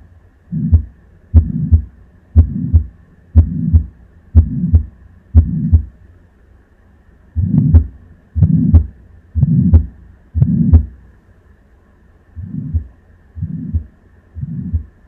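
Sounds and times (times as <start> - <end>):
heartbeat with harsh murmur: 0.5 - 6.0, 7.3 - 11.0, 12.4 - 15.0.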